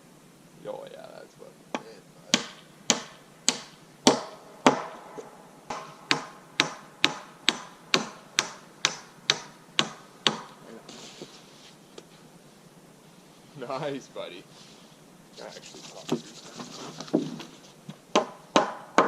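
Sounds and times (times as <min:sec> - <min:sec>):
hammer driving nails into wood: 0:01.7 - 0:10.6, 0:18.1 - 0:19.0.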